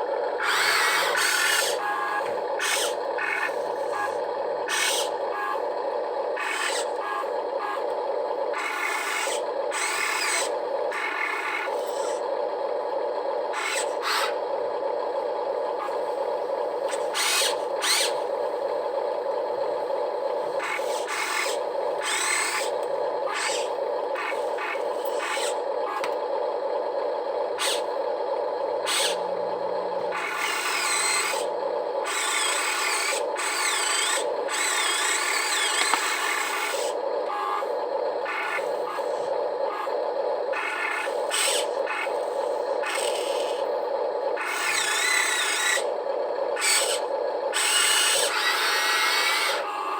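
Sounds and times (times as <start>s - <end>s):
small electric motors whirring: 0.0s - 49.9s.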